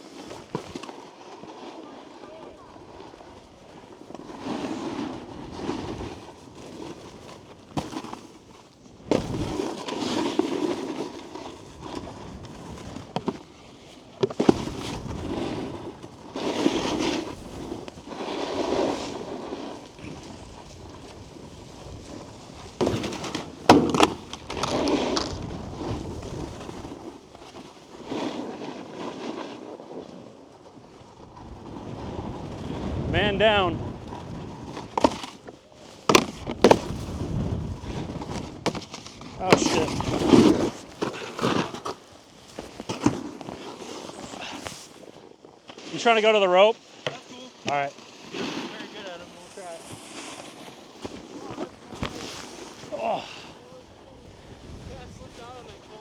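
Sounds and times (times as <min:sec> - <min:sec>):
snowboard scraping on snow: 0:00.0 - 0:56.0
snowboard knocking on rails: 0:09.0 - 0:13.5, 0:22.6 - 0:27.7, 0:36.1 - 0:42.0, 0:47.0 - 0:49.2.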